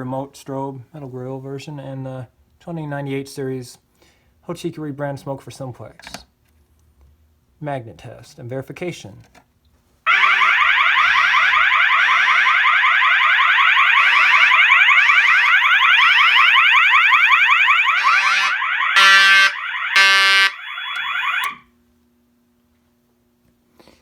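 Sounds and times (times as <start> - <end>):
alarm horn pulsing: 10.1 - 21.6
fire alarm warble tone: 10.1 - 21.6.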